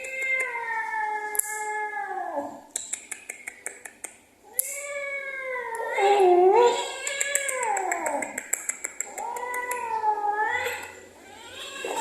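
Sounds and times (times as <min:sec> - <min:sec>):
quick sharp clicks: 0:02.7 - 0:04.7
cat yowling: 0:04.5 - 0:08.4, 0:09.1 - 0:12.0.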